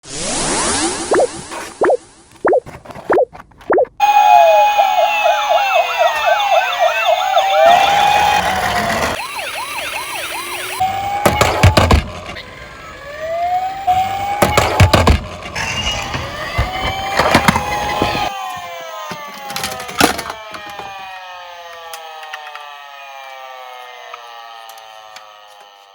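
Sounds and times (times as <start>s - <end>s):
police sirens wailing: 4.0s - 25.9s
sharp knocks: 11.2s - 12.2s.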